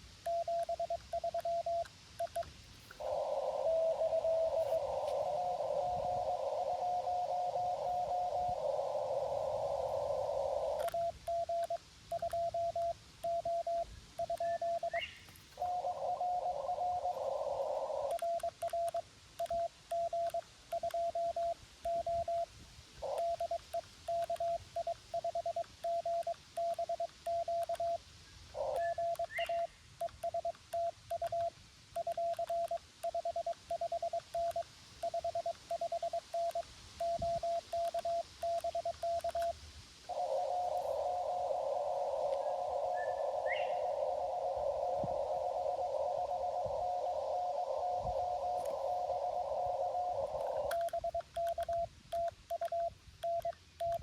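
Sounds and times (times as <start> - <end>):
morse sidetone dots and dashes: 0.1 - 28.0, 28.6 - 43.4, 44.7 - 54.0
morse code keyed tone: 0.2 - 2.5, 10.7 - 15.0, 18.1 - 22.5, 23.1 - 28.0, 28.8 - 39.6, 48.3 - 54.0
radio band hiss: 2.7 - 18.9, 36.3 - 51.6.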